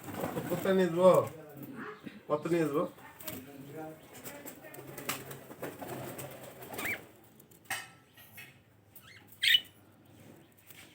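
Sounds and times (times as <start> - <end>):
budgerigars chirping: 9.1 - 9.7.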